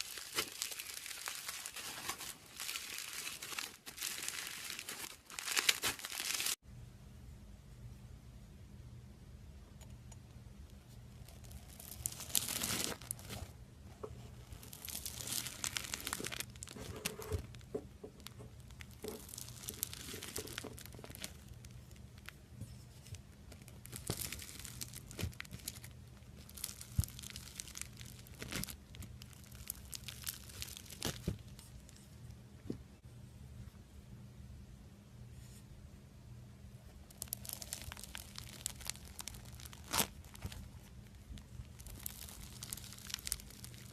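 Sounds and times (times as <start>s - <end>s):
slime crackling and popping: 0.0s - 1.8s, 11.2s - 13.4s, 14.4s - 22.4s, 23.5s - 31.9s, 37.1s - 43.9s.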